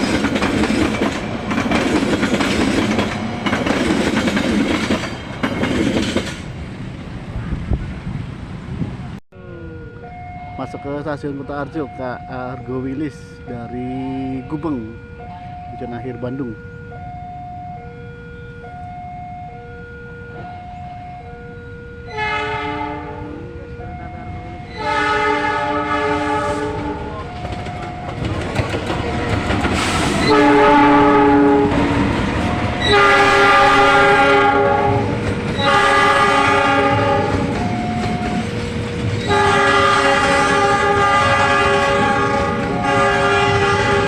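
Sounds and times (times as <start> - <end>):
two-tone railway warning alarm: 0.0 - 6.4, 9.4 - 44.0
train rumble and wheel clatter: 0.0 - 9.2, 10.5 - 44.0
locomotive horn blasts: 22.0 - 27.2, 30.1 - 31.9, 32.8 - 37.5, 39.2 - 44.0.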